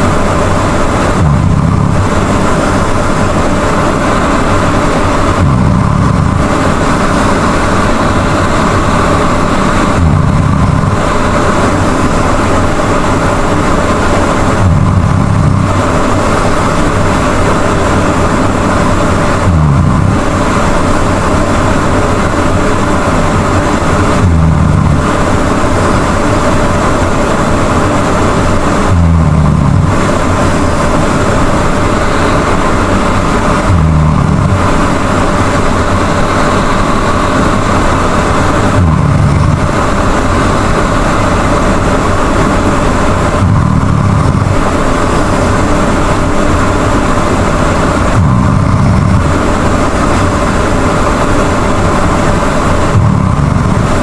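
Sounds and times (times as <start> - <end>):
steady loud hiss: 0.0 - 54.0.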